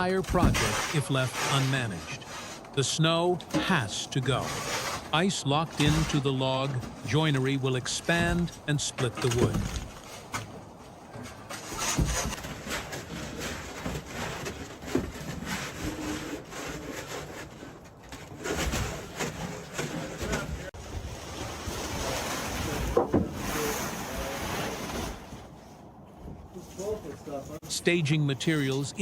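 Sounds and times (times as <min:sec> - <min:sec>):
shovel scraping snow: 0:00.2 - 0:09.5.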